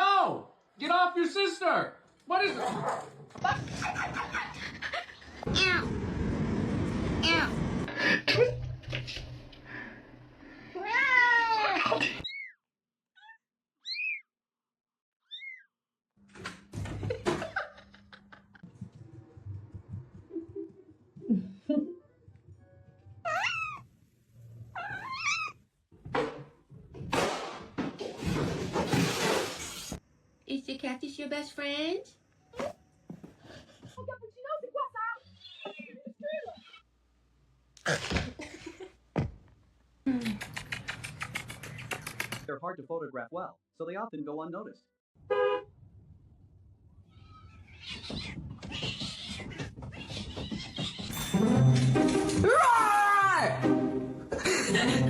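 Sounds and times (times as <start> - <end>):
cat meowing: 23.2 - 23.8, 24.7 - 25.6, 47.1 - 51.1
rough noisy cat sounds: 47.0 - 51.2.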